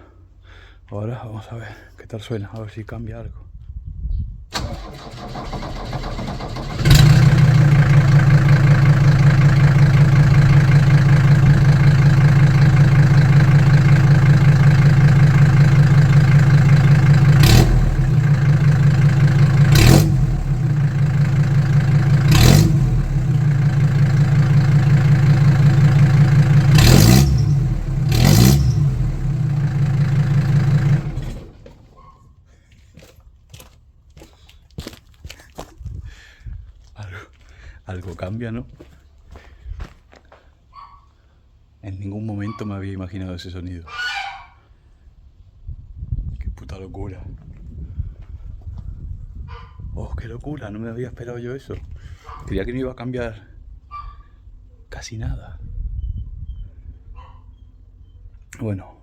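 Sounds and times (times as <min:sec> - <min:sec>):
diesel engine cranking: 0:04.5 - 0:32.0.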